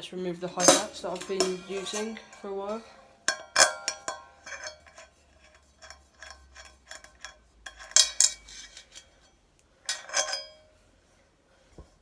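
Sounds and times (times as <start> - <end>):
cymbals clashing: 0.4 - 4.2
metallic cymbal clinks and knocks: 0.5 - 2.5.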